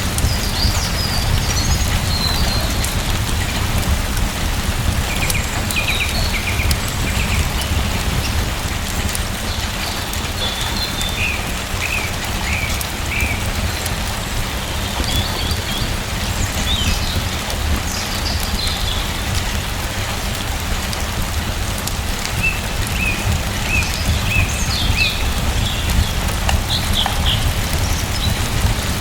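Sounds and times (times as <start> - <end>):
steady rain: 0.0 - 29.0
bird chirping: 22.4 - 28.6.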